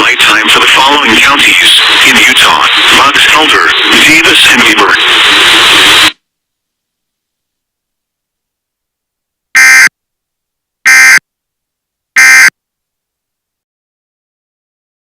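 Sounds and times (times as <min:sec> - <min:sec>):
buzzing digital data bursts: 0:12.2 - 0:12.5.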